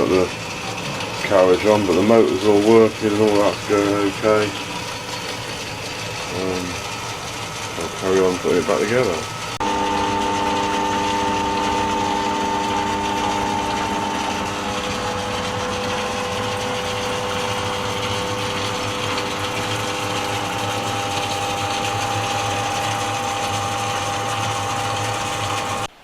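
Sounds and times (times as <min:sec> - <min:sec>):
lathe motor whirring and whining: 0:00.0 - 0:25.9.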